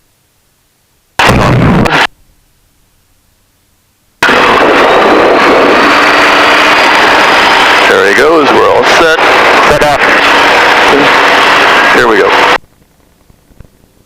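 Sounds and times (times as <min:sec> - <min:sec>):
faint rising whine: 0:01.0 - 0:14.0
loud blast of noise: 0:01.2 - 0:02.1, 0:04.2 - 0:12.6
aircraft piston engine: 0:04.2 - 0:12.6.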